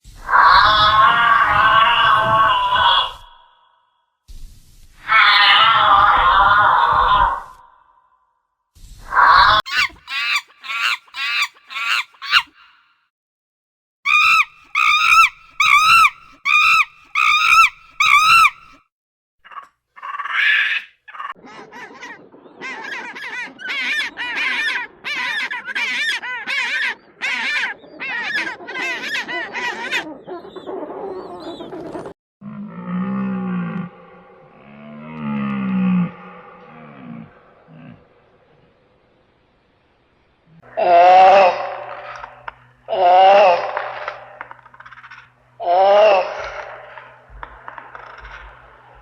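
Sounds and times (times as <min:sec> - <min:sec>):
waterfowl honking: 0:09.7 - 0:12.5, 0:14.1 - 0:18.7
flock calling: 0:09.7 - 0:12.8, 0:14.1 - 0:18.8.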